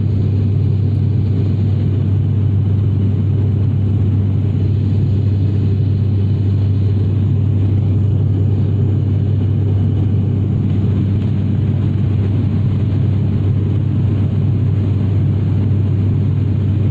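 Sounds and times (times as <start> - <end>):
propeller airliner engines droning: 0.0 - 16.9.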